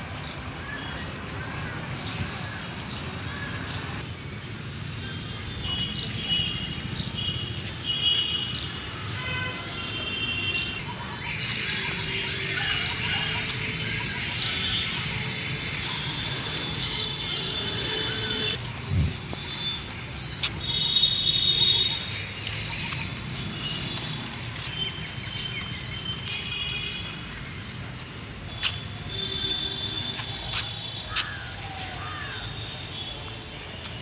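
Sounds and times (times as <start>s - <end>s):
hissing chatter: 10.8s - 18.6s
small birds chirping: 19.2s - 28.8s.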